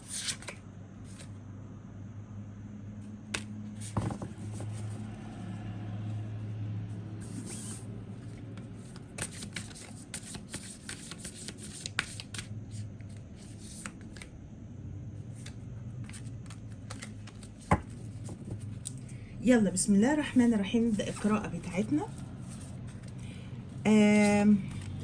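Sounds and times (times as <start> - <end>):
cards being shuffled: 0.0 - 1.3, 7.2 - 14.3, 15.4 - 18.8
low steady hum: 10.5 - 25.0.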